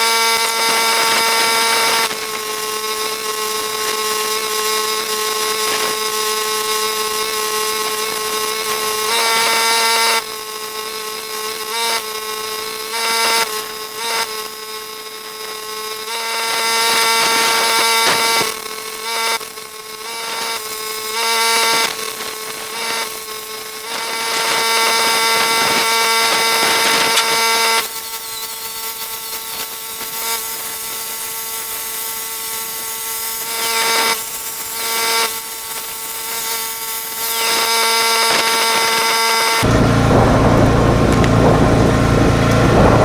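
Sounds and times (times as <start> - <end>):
welding arc sizzling: 0.0 - 43.0
low rumble: 39.7 - 43.0.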